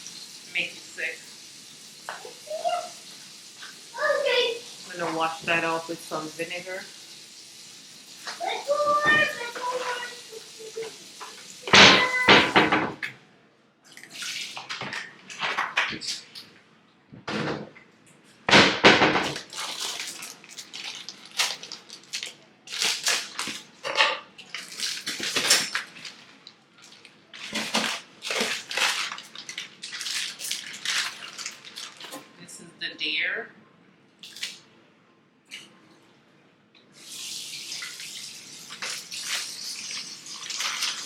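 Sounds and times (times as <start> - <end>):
water splashing in a sink: 0.0 - 12.9, 13.8 - 16.5, 24.4 - 32.2, 34.2 - 34.6, 37.0 - 41.0.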